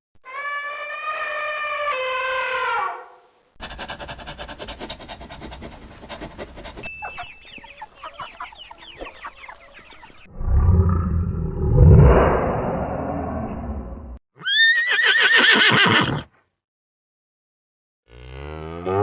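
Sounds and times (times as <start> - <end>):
chickens clucking: 5.2 - 10.3
high cheeping calls: 6.8 - 10.2
horse whinnying: 14.4 - 16.4.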